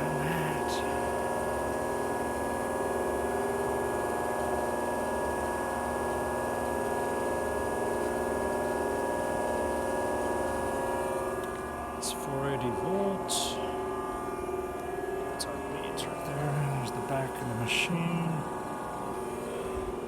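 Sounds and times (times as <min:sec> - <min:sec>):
hydraulic pump motor humming: 0:06.3 - 0:20.0.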